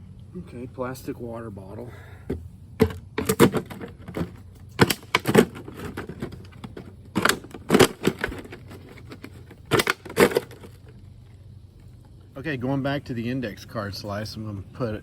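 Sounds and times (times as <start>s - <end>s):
plastic bottle crackling: 2.8s - 10.9s.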